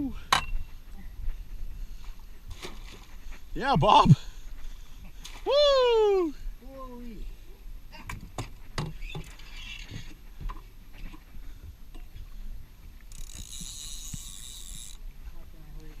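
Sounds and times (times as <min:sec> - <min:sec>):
fishing gear clicking and knocking: 0:13.0 - 0:15.0.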